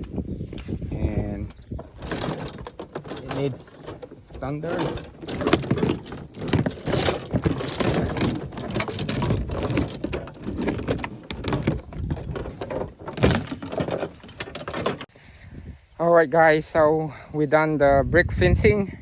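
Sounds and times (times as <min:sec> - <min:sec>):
fence gear clicking and rattling: 0:00.0 - 0:15.1.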